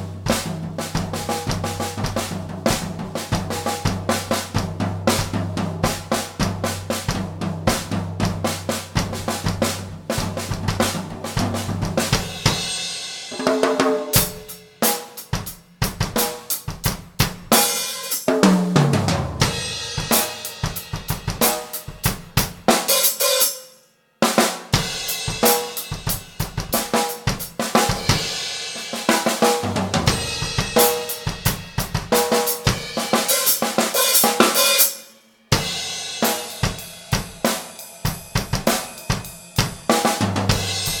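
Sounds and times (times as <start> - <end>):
rapid snare drum hits: 0.0 - 23.5, 24.4 - 34.9, 35.5 - 41.0
drum kit played loud: 0.0 - 41.0
hi-hat and cymbal hits: 14.1 - 18.3, 19.4 - 23.8, 24.6 - 41.0.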